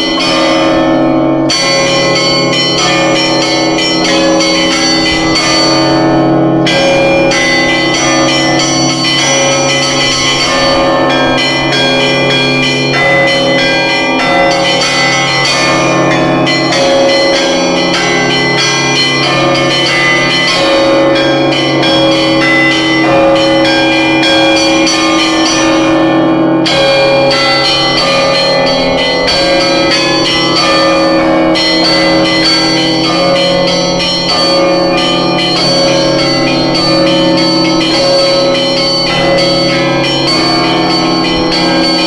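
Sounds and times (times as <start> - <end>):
high bells striking: 0.0 - 42.0
low bells ringing: 0.0 - 42.0.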